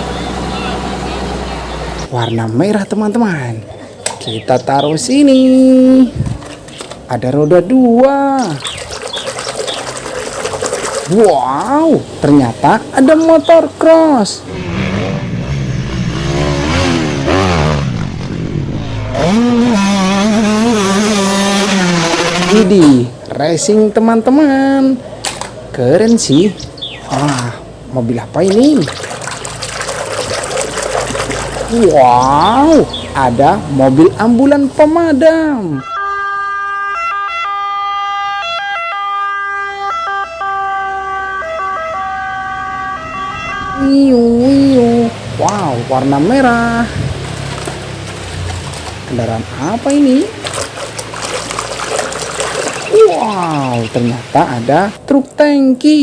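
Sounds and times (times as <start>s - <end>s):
motorcycle engine revving: 14.4s - 23.1s, 42.4s - 54.9s
toy electronic siren: 35.8s - 44.0s.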